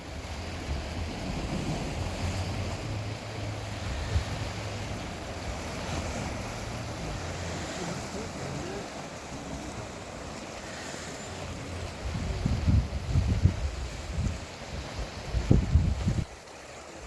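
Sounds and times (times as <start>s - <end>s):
wind on microphone: 0.0s - 8.1s, 11.4s - 16.4s
sea waves: 0.0s - 17.0s.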